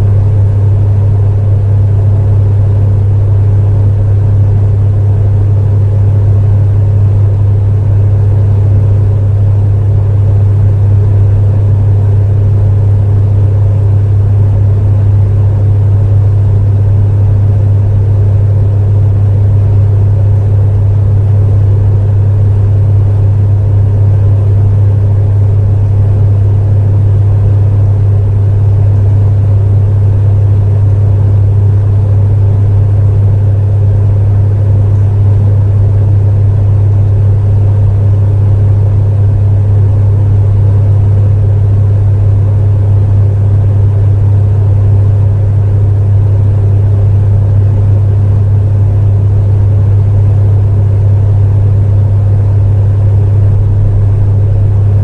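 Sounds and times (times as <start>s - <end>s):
space heater humming: 0.0s - 55.0s
heater air rushing: 52.4s - 55.0s.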